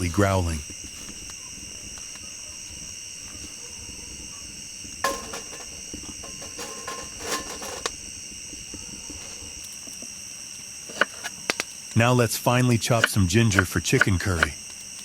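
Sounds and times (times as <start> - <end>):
crickets chirring: 0.0 - 15.0
loud clatter and knocks: 5.0 - 8.0.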